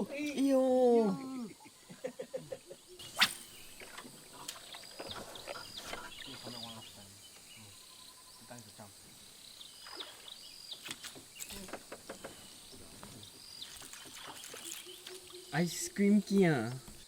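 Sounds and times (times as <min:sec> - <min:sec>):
short whistled calls: 0:02.9 - 0:03.9
high-pitched insect drone: 0:06.4 - 0:10.3, 0:14.2 - 0:16.8.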